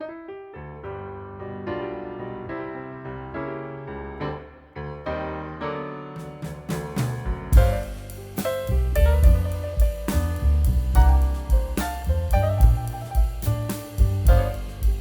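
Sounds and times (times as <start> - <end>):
piano melody over chords: 0.0 - 15.0
drum hits: 6.2 - 15.0.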